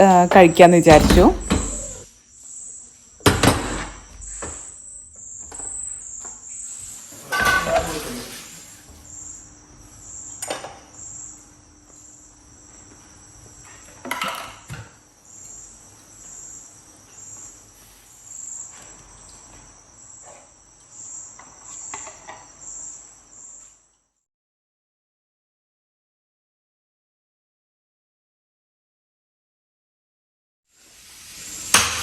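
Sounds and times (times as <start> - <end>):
crickets chirping: 0.0 - 24.0, 30.8 - 31.8.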